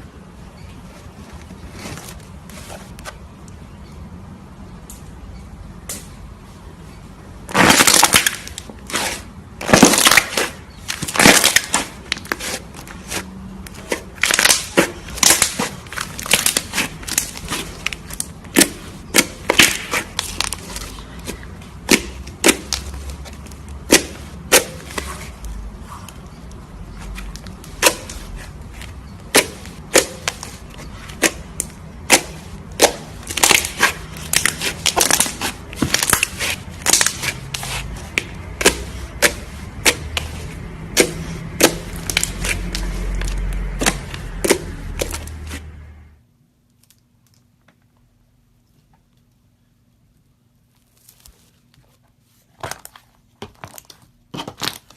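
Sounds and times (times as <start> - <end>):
slime popping and crackling: 7.5 - 9.0, 9.6 - 12.5, 13.7 - 25.5, 29.2 - 45.6.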